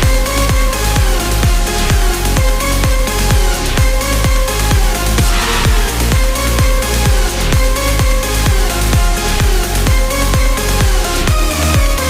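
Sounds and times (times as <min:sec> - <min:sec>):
electronic dance music: 0:00.0 - 0:12.0
hiss swell: 0:05.2 - 0:06.6.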